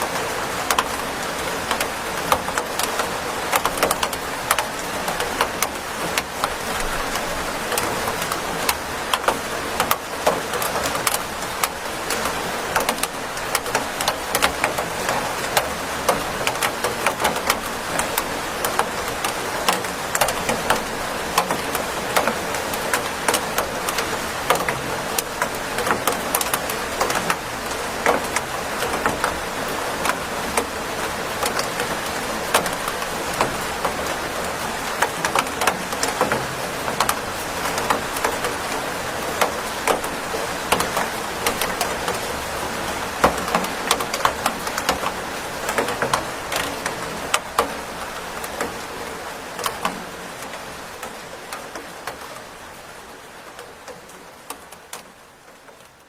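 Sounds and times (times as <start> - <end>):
steady rain: 0.0 - 56.0.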